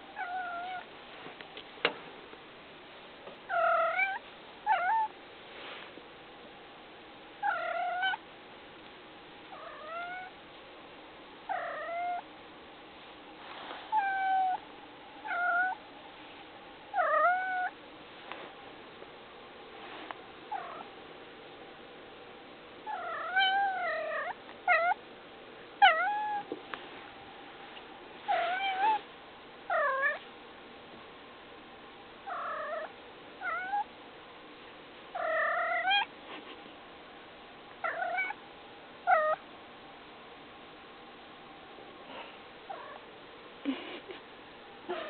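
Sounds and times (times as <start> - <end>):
cat meowing: 0.2 - 0.8, 3.5 - 5.1, 9.6 - 10.3, 11.5 - 12.2, 15.2 - 15.8, 17.0 - 17.7, 22.9 - 25.0, 25.8 - 26.5, 28.3 - 29.0, 32.3 - 33.8, 35.2 - 36.1, 37.8 - 38.4.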